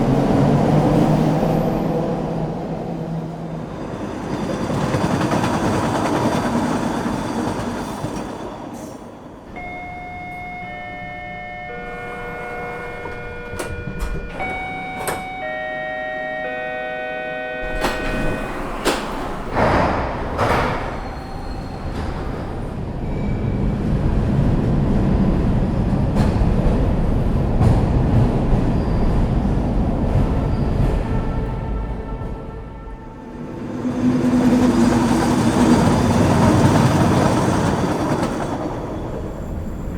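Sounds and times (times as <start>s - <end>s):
electronic door chime: 9.6s - 19.0s
train rumble pulling away: 17.6s - 39.9s.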